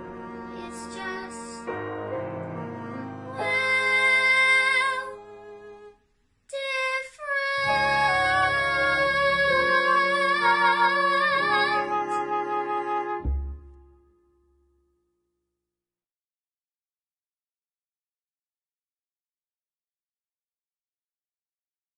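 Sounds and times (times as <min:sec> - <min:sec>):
musical backing track: 0:00.0 - 0:06.0, 0:07.6 - 0:14.6
young person singing with vibrato: 0:00.3 - 0:01.8, 0:02.8 - 0:05.3, 0:06.5 - 0:12.2.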